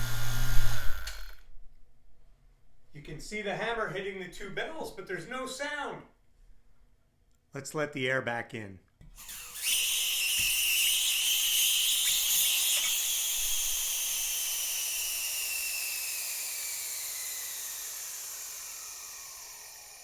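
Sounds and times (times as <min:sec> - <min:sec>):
falling whistle: 0:09.4 - 0:20.0.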